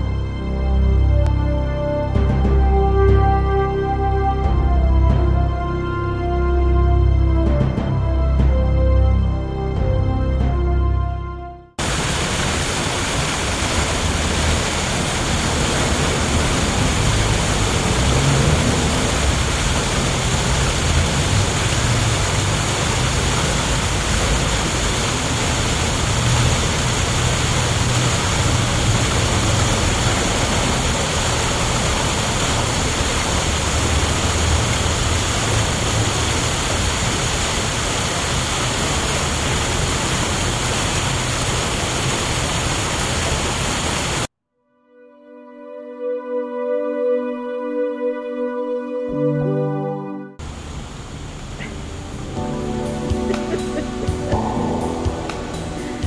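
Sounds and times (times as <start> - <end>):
steady rushing noise: 11.8 - 44.3, 50.4 - 56.0.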